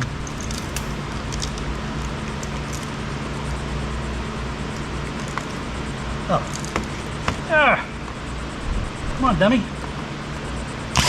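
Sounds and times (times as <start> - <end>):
electric fans humming: 0.0 - 11.0.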